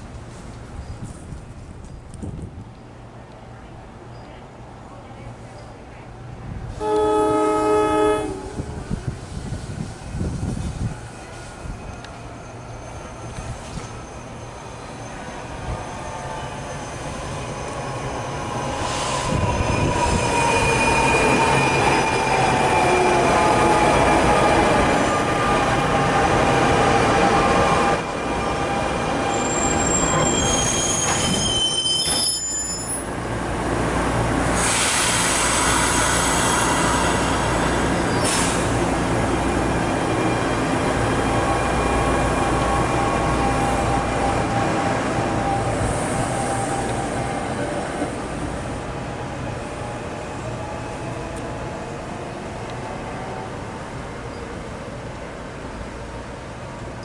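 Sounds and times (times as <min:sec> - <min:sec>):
train rumble: 0:00.0 - 0:57.0
train wheel squeals: 0:11.2 - 0:25.6, 0:28.4 - 0:33.1, 0:34.6 - 0:38.7.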